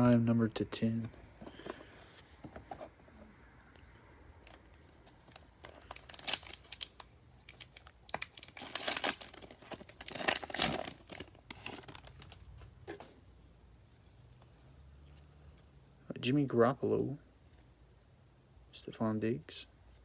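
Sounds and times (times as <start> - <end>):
wrapper crinkling: 4.4 - 12.6
card pack wrapper tearing: 5.4 - 12.4.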